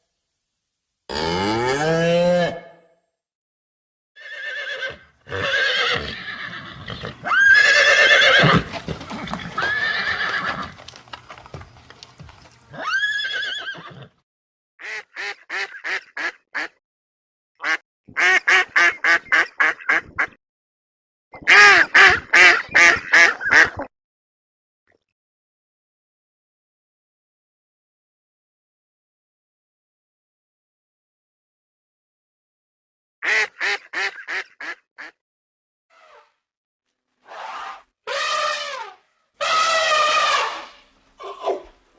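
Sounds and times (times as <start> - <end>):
horses neighing: 4.2 - 14.2, 39.4 - 41.8.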